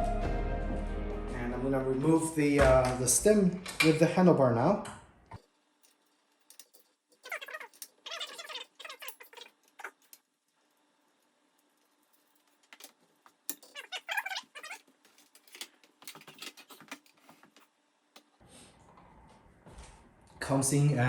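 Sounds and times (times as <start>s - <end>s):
metal bicycle parts clinking: 5.8s - 10.2s, 11.6s - 17.2s.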